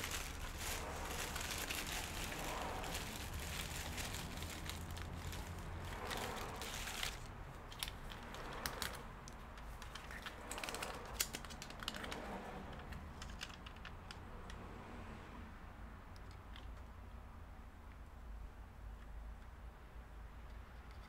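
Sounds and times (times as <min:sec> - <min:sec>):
light clicks of laptop parts: 0:07.7 - 0:14.6, 0:20.4 - 0:21.0.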